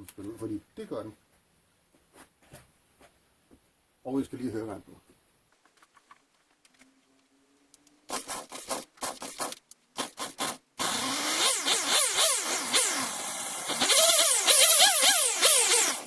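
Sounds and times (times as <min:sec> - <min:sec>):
chainsaw starter pulls: 0:08.1 - 0:16.0
chainsaw engine revving: 0:10.0 - 0:16.0.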